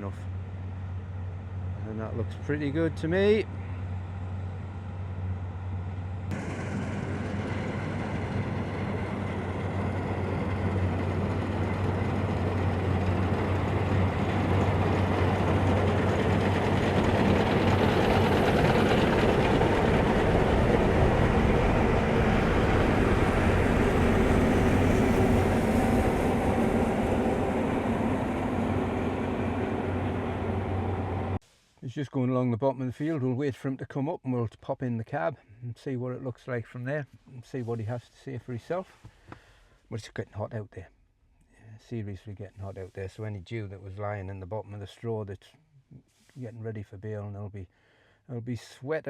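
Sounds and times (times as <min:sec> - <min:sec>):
heavy machinery engine humming: 0:00.0 - 0:31.4.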